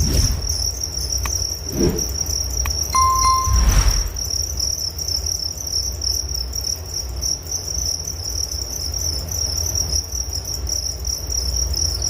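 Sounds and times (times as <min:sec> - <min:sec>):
crickets chirping: 0:00.0 - 0:12.0
clear ringing tone: 0:03.0 - 0:04.3.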